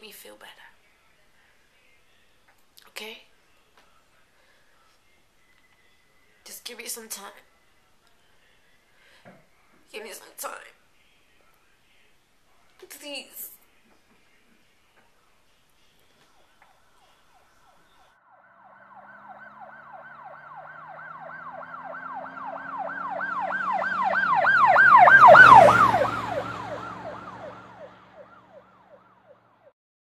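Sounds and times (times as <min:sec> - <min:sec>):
siren yelping: 0:17.4 - 0:29.4
passing vehicle low note: 0:18.2 - 0:29.7.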